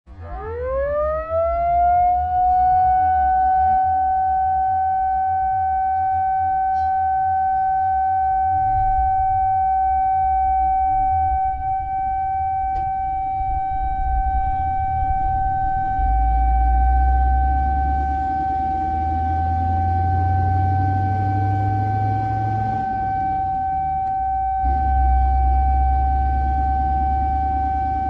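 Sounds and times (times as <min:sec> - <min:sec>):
low rumble: 0:00.1 - 0:28.0
low-pitched siren: 0:00.1 - 0:28.0.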